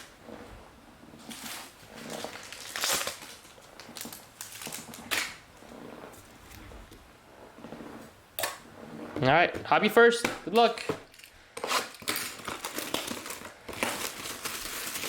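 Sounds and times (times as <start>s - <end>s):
plastic packaging crinkling: 1.2s - 5.5s, 10.5s - 15.0s.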